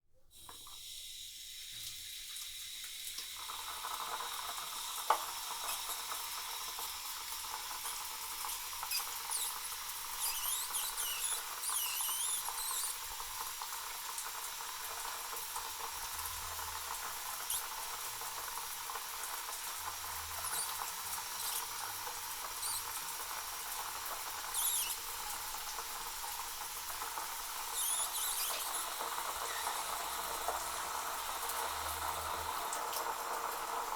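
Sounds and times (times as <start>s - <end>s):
shower water spray hissing: 0.4s - 33.9s
high squeaky chirps: 7.9s - 13.0s, 17.5s - 17.7s, 20.4s - 21.8s, 22.6s - 23.0s, 24.5s - 25.3s, 27.7s - 29.8s.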